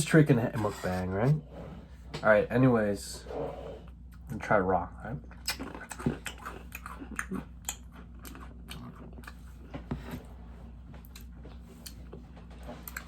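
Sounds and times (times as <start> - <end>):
low steady hum: 0.0 - 13.0
cookie crunching and chewing: 5.3 - 13.0.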